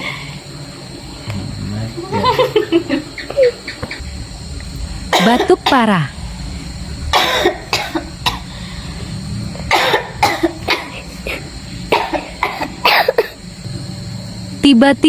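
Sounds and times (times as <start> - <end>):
person coughing: 5.1 - 5.9, 7.1 - 8.5, 9.7 - 13.4.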